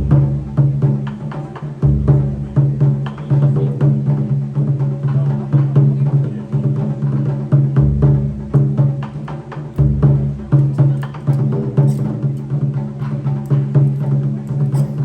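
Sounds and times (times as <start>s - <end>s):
deep drum boom: 0.0s - 15.0s
taiko drums: 0.0s - 15.0s.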